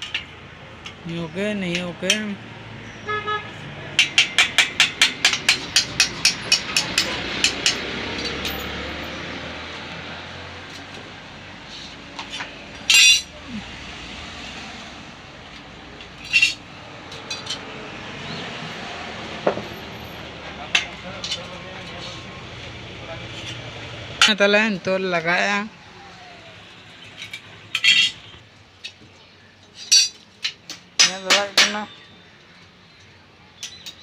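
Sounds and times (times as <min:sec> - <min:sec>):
metal tools tapping: 0:00.0 - 0:02.3, 0:03.9 - 0:08.8, 0:12.2 - 0:13.4, 0:15.5 - 0:17.7, 0:20.7 - 0:22.2, 0:27.0 - 0:29.0, 0:29.7 - 0:32.0, 0:33.6 - 0:34.0
metal knocks: 0:03.9 - 0:08.6.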